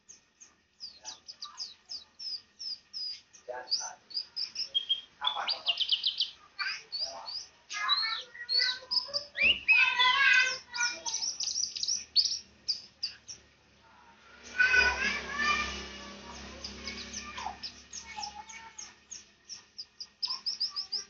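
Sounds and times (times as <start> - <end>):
songbird twittering: 0.0 - 13.5, 14.4 - 21.0.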